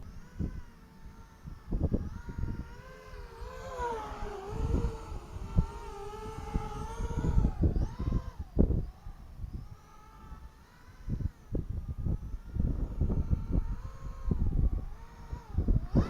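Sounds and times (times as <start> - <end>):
quadcopter motors whining: 0.0 - 16.0
wind buffeting microphone: 0.0 - 16.0.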